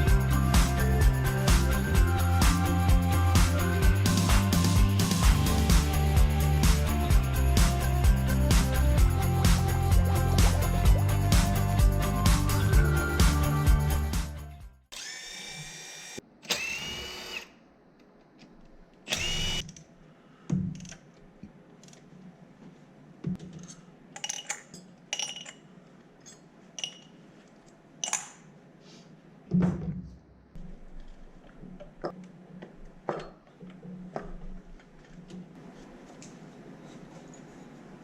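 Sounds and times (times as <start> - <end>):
background music: 0.0 - 14.8
power tool whirring: 14.9 - 17.6, 19.1 - 19.7
tools clicking and knocking: 23.3 - 25.6, 26.2 - 27.2, 28.0 - 28.5.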